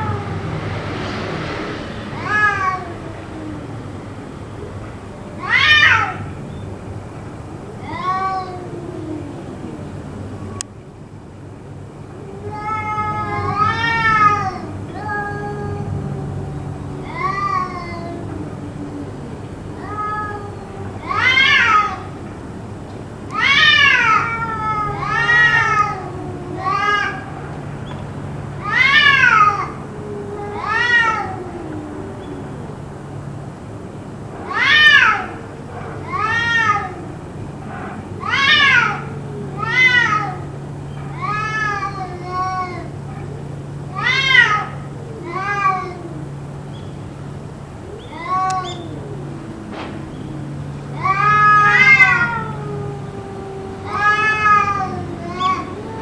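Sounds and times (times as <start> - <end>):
cat meowing loudly: 0.0 - 1.0, 2.1 - 3.8, 5.4 - 6.4, 7.8 - 9.8, 12.1 - 19.1, 19.8 - 22.3, 23.3 - 27.5, 28.5 - 32.7, 34.4 - 35.4, 36.0 - 37.2, 38.2 - 46.4, 48.1 - 56.0
faint wavering cat call: 0.0 - 56.0.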